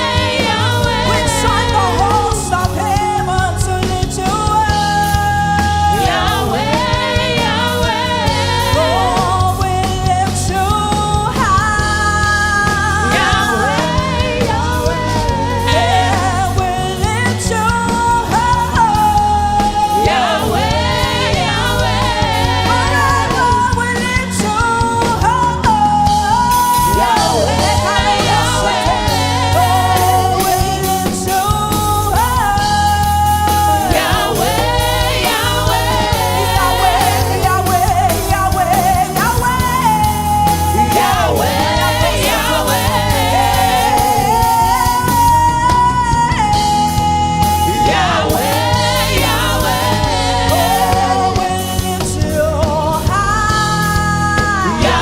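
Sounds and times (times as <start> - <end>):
backing voices: 0.0 - 55.0
band with bass and drums: 0.0 - 55.0
lead singer: 0.0 - 55.0.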